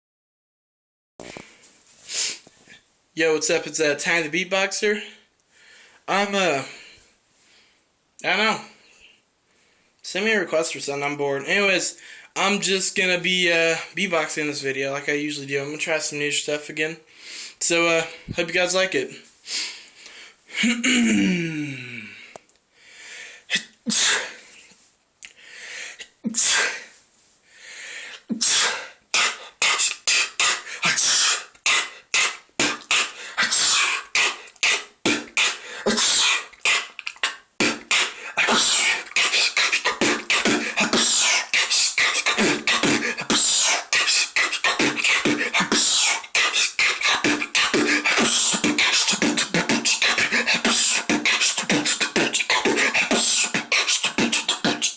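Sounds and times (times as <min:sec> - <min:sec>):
sneeze sounds: 0:23.5 - 0:24.4, 0:28.3 - 0:54.9
vocal beatboxing: 0:28.3 - 0:54.9.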